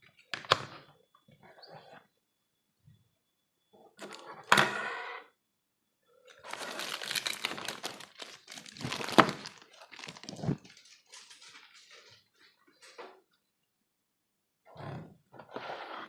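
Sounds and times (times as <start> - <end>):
plastic and cardboard crinkling: 6.3 - 13.0.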